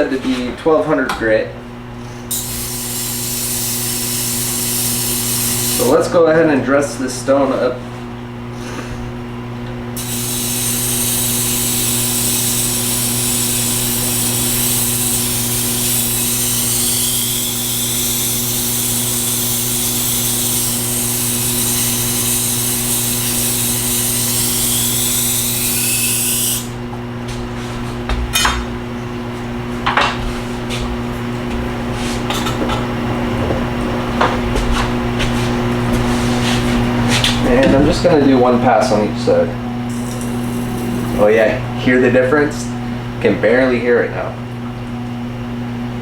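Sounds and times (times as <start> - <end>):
high rasping hiss of stone dressing: 2.3 - 5.9, 10.0 - 26.7, 40.0 - 41.4
wet grinder humming: 2.3 - 6.1, 10.0 - 26.9, 39.8 - 41.9.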